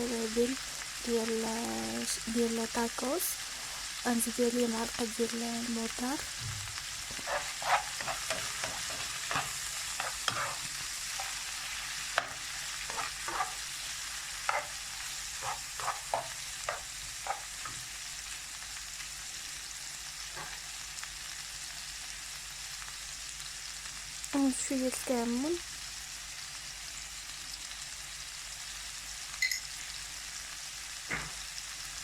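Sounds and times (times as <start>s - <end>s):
meat sizzling in oil: 0.0s - 32.0s
utensil scraping and tapping pan: 7.1s - 11.4s, 12.2s - 13.6s, 14.4s - 14.8s, 15.4s - 17.8s.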